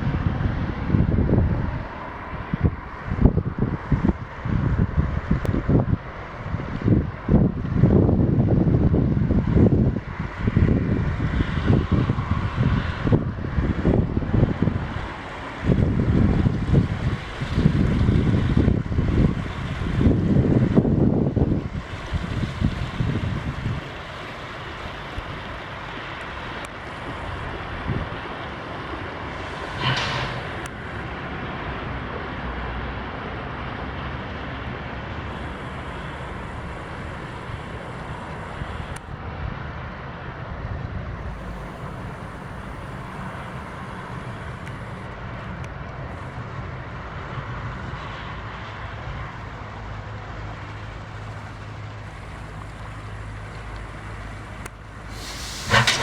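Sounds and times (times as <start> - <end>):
wind buffeting microphone: 0.0 - 25.7, 27.0 - 28.5, 35.3 - 47.8, 51.7 - 56.0
diesel engine exhaust: 0.0 - 56.0
short hissing burst: 35.3 - 39.0, 41.4 - 45.1, 52.1 - 56.0.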